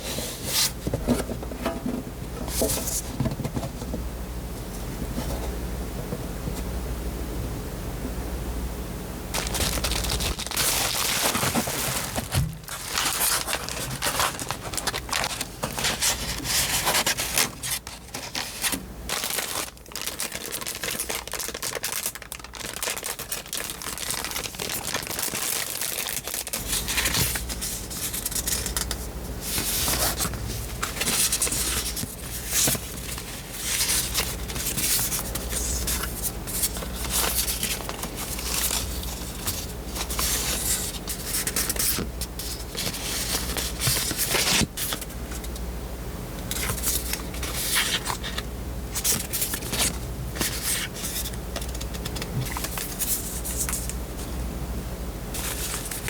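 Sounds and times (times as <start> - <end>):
low steady hum: 0.0 - 56.0
packaging crinkling and tearing: 9.3 - 45.2, 46.5 - 54.0, 55.4 - 56.0.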